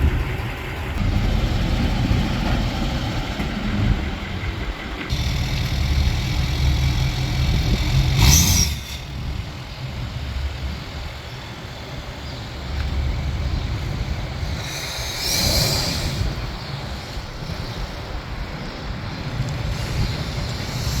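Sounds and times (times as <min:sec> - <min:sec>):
diesel engine rumbling: 0:00.0 - 0:21.0
short hissy bursts: 0:14.4 - 0:17.0.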